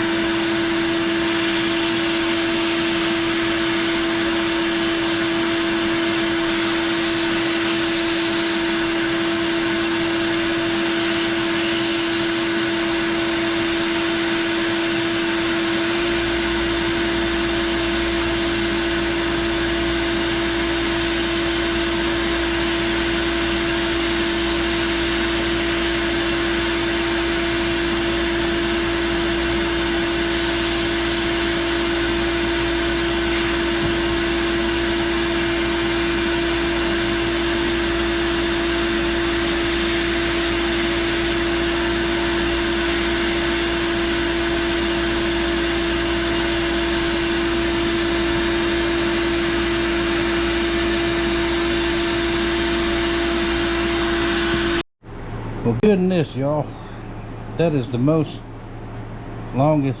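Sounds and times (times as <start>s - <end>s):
shop vacuum motor whine: 0.0s - 54.9s
sandblasting hiss: 1.0s - 9.0s, 10.3s - 35.8s, 38.8s - 45.2s.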